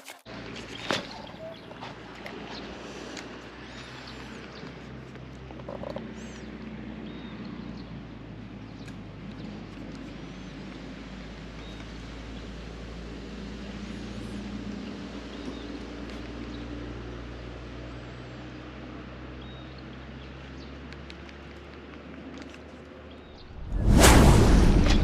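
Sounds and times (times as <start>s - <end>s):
faint birds chirping: 0.4s - 12.7s, 13.6s - 17.2s.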